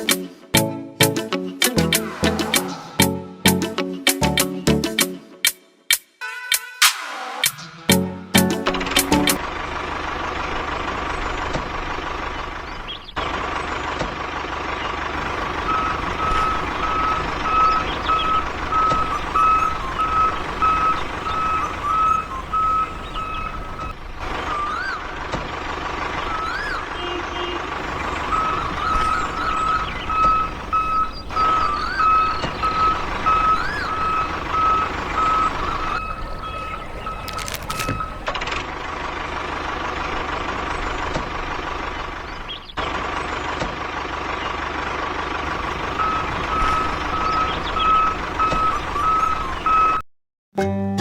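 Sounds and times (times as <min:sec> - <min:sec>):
steady machine noise: 0:15.0 - 0:24.1, 0:27.7 - 0:43.4, 0:45.4 - 0:50.0
vehicle reversing alarm beeping: 0:15.1 - 0:25.1, 0:26.1 - 0:38.4, 0:45.5 - 0:50.0.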